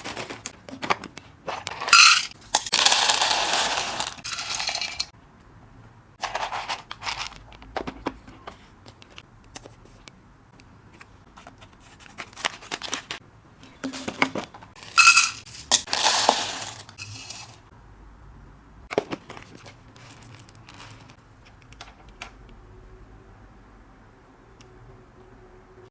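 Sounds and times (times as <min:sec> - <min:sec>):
items clicking and clinking: 0:00.0 - 0:05.1, 0:11.0 - 0:17.6, 0:18.9 - 0:22.4.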